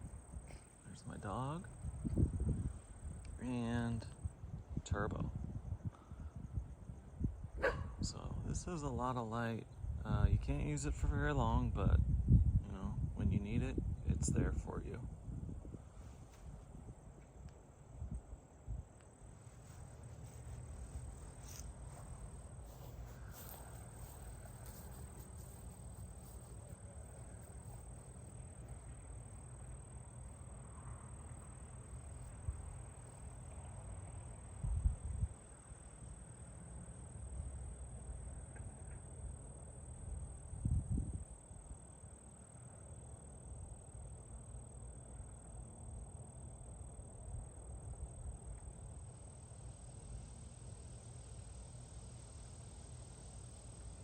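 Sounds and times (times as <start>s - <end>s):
insects chirring: 0.0s - 54.0s.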